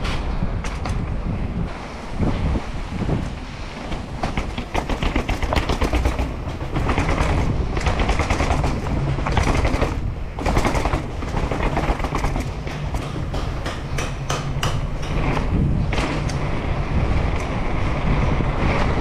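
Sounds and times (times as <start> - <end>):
wind on microphone: 0.0 - 19.0
mountain bike rattling over rough ground: 3.9 - 14.0.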